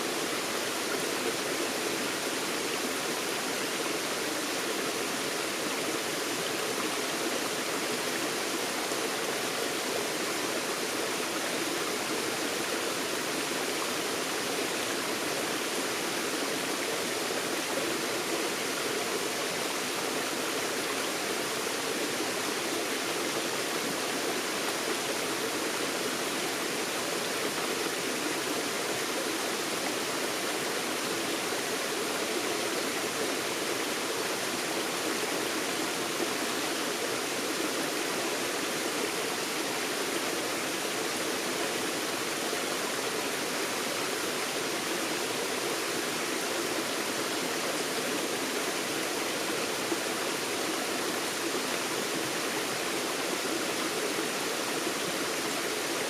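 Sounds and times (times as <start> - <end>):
stream running over rocks: 0.0 - 56.0.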